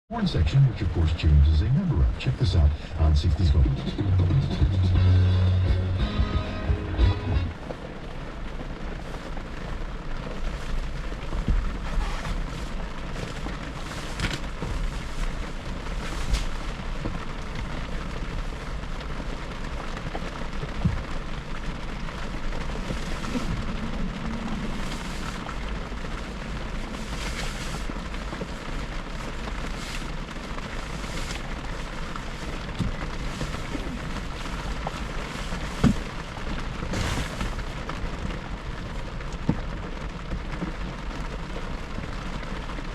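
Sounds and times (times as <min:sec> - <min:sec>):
tyre and engine rumble: 0:00.1 - 0:08.7.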